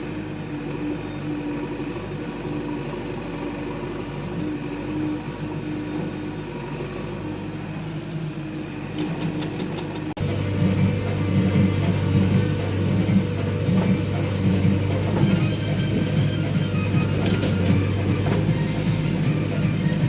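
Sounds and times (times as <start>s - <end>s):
diesel engine idling: 0.0s - 20.0s.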